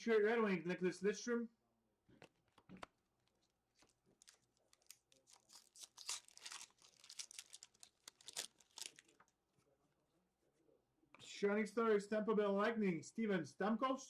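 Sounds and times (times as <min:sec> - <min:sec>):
cards and wrapper rustling: 0:02.2 - 0:09.3.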